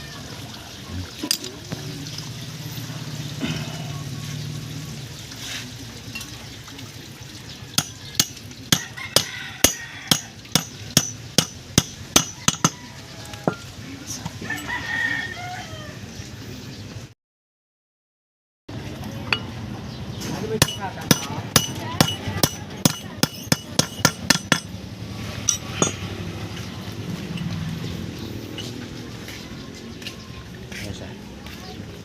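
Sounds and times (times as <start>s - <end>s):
hammer tapping metal: 7.8s - 12.8s, 20.6s - 24.8s, 25.4s - 26.0s
rooster crowing: 8.8s - 10.4s, 12.2s - 13.7s, 14.4s - 16.1s.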